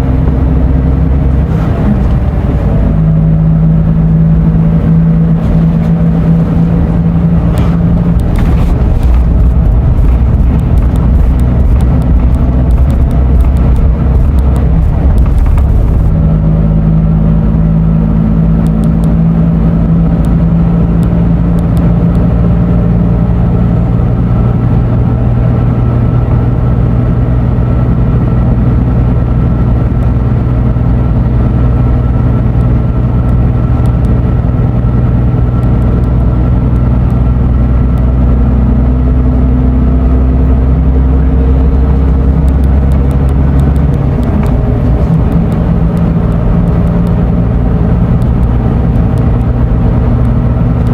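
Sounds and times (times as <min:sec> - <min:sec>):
coach diesel engine running: 0:00.0 - 0:50.9.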